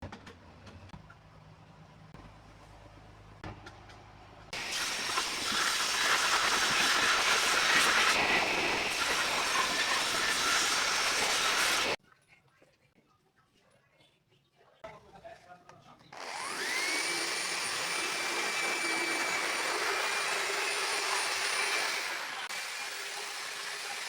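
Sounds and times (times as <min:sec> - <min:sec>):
power tool shaping wood: 0:04.6 - 0:12.0, 0:16.2 - 0:24.0.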